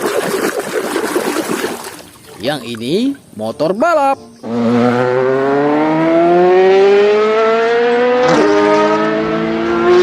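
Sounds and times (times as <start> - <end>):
racing engine accelerating: 4.4 - 10.0.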